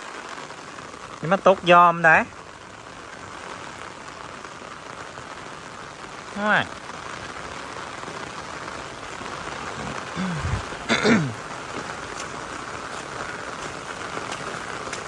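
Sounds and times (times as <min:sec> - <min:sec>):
heavy rain pouring: 0:00.0 - 0:15.0
falling vocal sound: 0:09.7 - 0:11.3.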